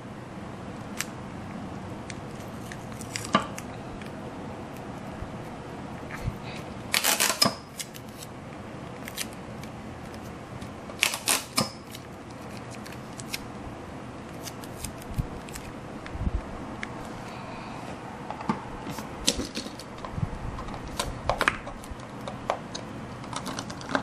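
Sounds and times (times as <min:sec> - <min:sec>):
steady low hiss: 0:12.0 - 0:23.3
sharp clicks and crackles: 0:19.3 - 0:24.0.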